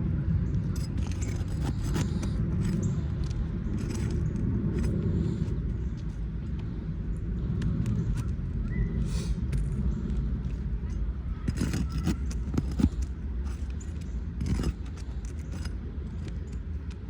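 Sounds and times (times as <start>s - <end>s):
steady low rumble: 0.0s - 17.0s
tool prying nails from shingles: 11.5s - 17.0s.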